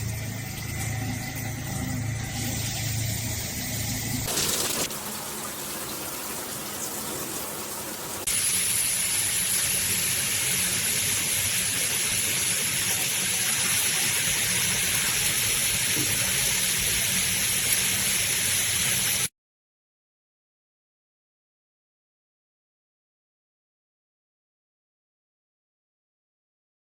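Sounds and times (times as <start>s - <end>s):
shower water spraying: 4.2s - 19.3s.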